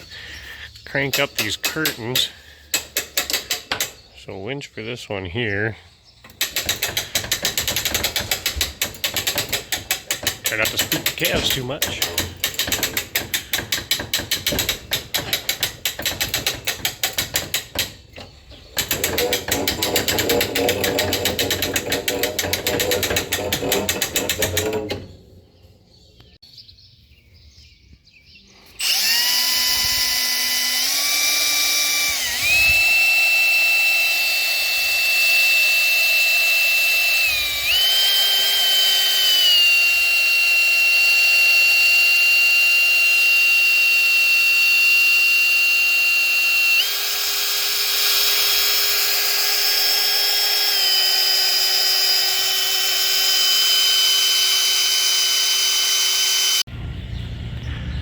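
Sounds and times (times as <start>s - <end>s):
winch ratchet clicking: 1.0s - 4.0s, 6.2s - 25.1s, 28.8s - 56.7s
electric drill motor whining: 6.3s - 25.1s, 28.7s - 56.7s.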